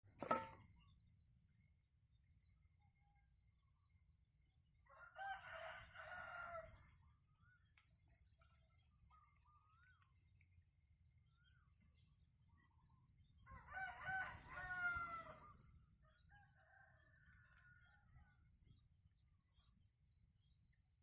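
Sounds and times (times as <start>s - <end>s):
rooster crowing: 4.9s - 6.7s, 13.5s - 15.5s.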